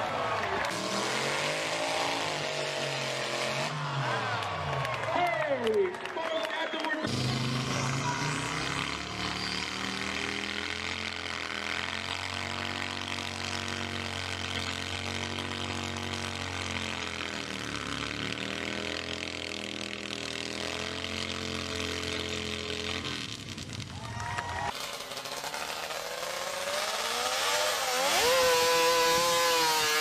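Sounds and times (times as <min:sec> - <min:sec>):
chainsaw engine running: 0:00.0 - 0:05.4, 0:07.0 - 0:30.0.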